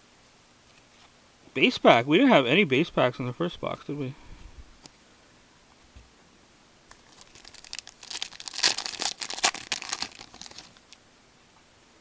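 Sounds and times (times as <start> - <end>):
card pack wrapper crinkling and tearing: 6.9 - 11.0.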